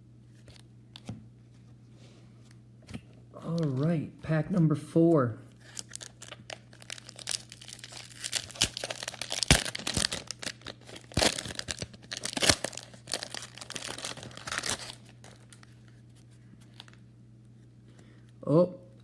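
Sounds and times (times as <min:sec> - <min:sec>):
card pack wrapper crinkling: 0:05.6 - 0:15.9, 0:16.6 - 0:17.0.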